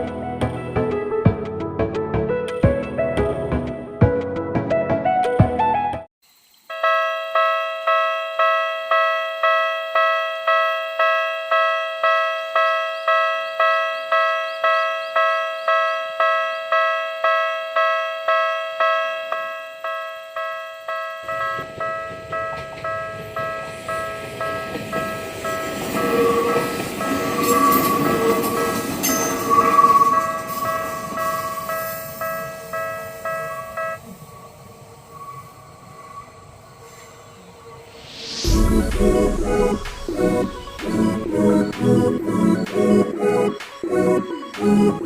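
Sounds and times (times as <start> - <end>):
electronic crossing bell ringing: 6.7 - 34.0
train running noise: 21.2 - 45.0.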